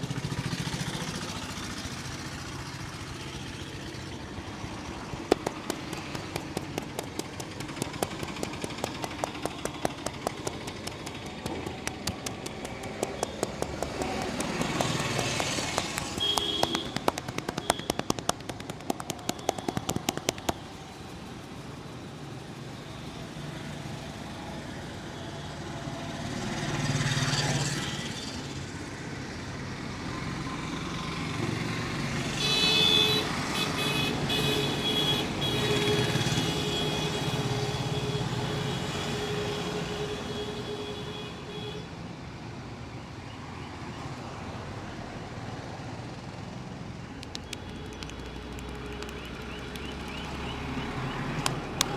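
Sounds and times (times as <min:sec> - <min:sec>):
street traffic passing: 0:00.0 - 0:51.9
quick run of clicks: 0:04.9 - 0:20.9, 0:47.1 - 0:50.4, 0:51.3 - 0:51.9.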